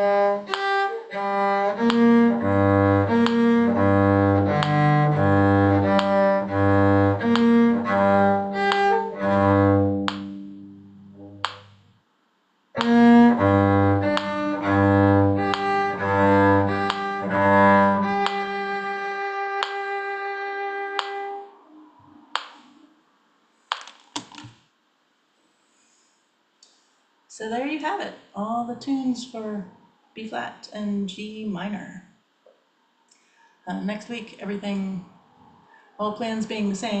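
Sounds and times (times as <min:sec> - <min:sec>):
bowed strings melody: 0:00.0 - 0:11.8, 0:12.8 - 0:21.6
low cello notes: 0:00.0 - 0:11.9, 0:12.8 - 0:22.5.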